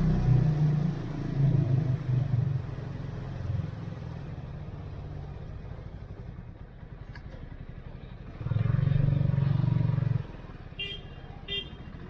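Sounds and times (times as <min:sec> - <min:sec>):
motorcycle engine revving: 0:00.0 - 0:03.5, 0:08.2 - 0:10.6.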